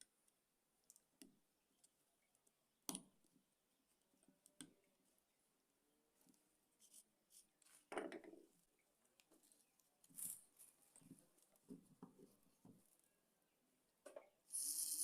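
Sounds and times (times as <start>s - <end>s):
objects being handled: 6.2s - 13.1s.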